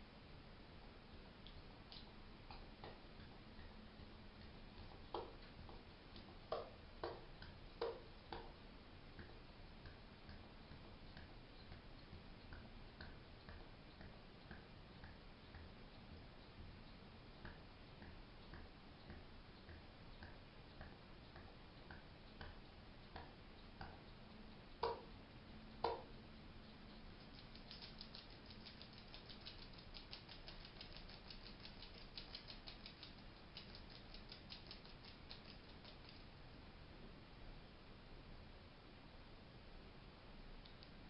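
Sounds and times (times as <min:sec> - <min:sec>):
faint ticking: 0:01.1 - 0:36.7
fast fine high ticking: 0:09.2 - 0:36.4.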